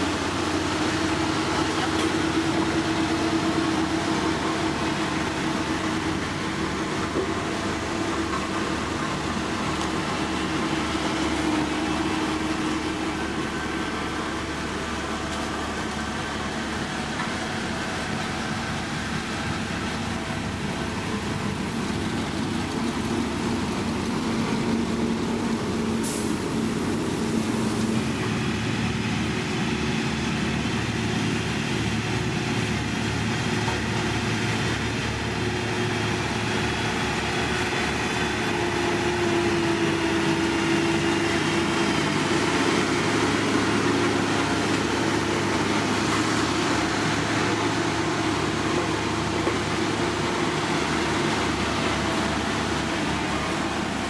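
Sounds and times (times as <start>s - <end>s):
diesel construction machinery engine: 0.0s - 54.0s
brief hiss: 26.0s - 28.2s.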